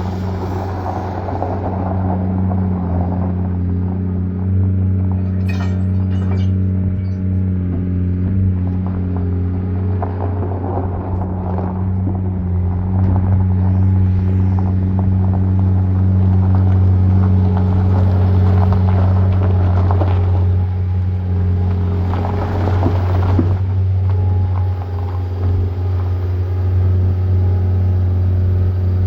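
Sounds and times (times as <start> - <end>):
diesel engine running: 0.0 - 29.0
metallic rattles and clanks: 5.0 - 8.1.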